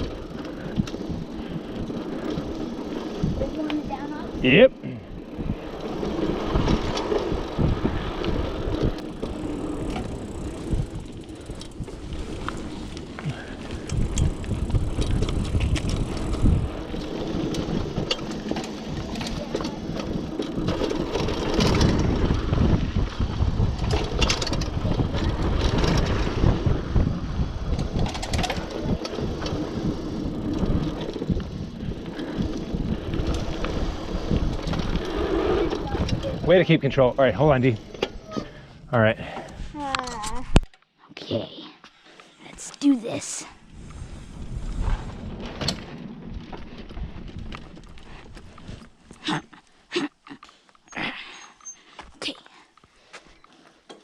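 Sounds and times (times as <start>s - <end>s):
tyres rumbling over dirt: 0.0s - 39.4s
bike rattling over bumps: 0.0s - 40.6s, 43.2s - 49.9s.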